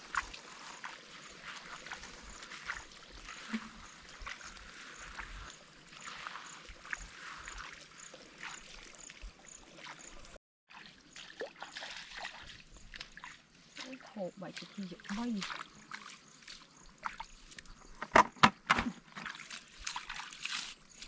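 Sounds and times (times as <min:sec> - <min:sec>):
stream water running: 0:00.0 - 0:21.0
water splashing and sloshing: 0:00.0 - 0:21.0.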